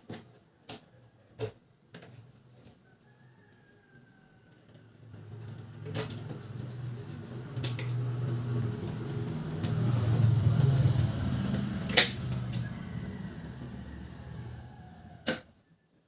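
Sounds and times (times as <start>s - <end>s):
low steady hum: 5.1s - 15.3s.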